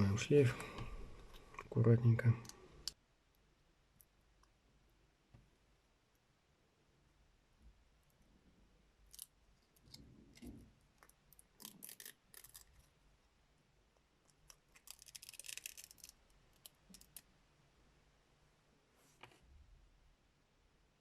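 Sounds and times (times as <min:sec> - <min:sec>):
plastic parts clicking and scratching: 0:09.1 - 0:12.9, 0:14.2 - 0:17.3.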